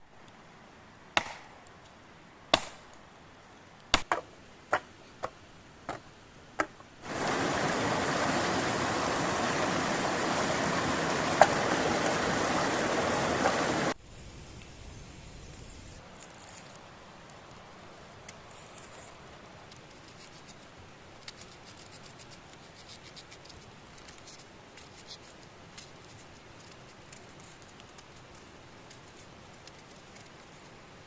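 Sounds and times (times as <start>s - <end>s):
loud steady hiss: 0.0s - 16.2s
sharp chopping knocks: 1.2s - 1.4s.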